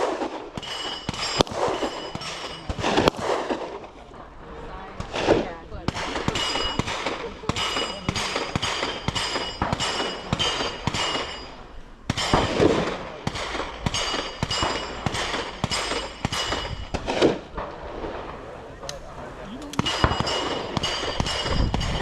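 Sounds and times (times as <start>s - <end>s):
handgun shots: 0.0s - 3.7s, 12.1s - 17.4s, 19.7s - 22.0s.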